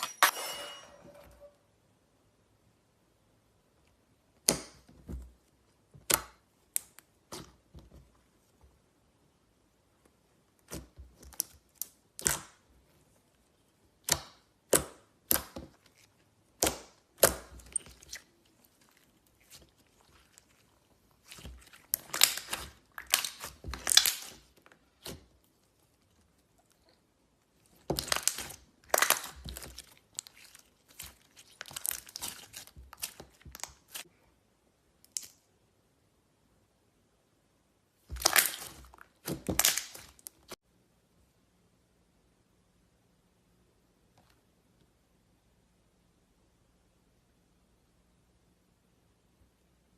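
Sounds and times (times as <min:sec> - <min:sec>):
slime squished by hand: 0:13.9 - 0:34.1, 0:38.0 - 0:40.6.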